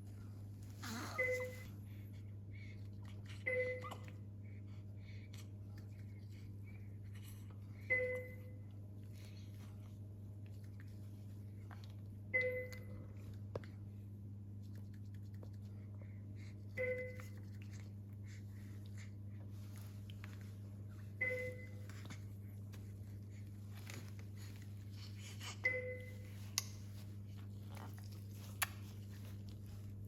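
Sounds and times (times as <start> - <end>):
steady low hum: 0.0 - 30.0
two-tone alarm chime: 7.9 - 8.5, 21.2 - 21.8, 25.6 - 26.3.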